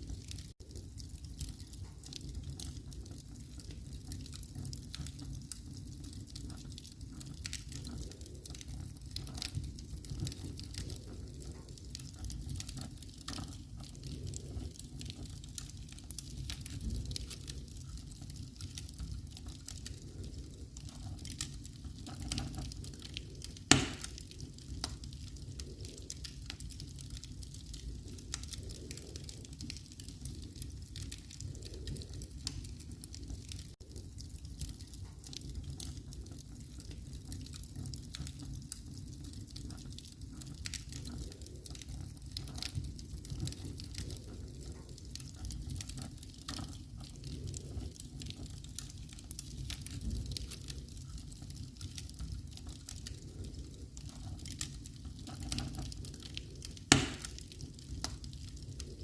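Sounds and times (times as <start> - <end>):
wood fire crackling: 0.0 - 59.0
loud sharp pop: 23.7 - 24.1, 56.9 - 57.3.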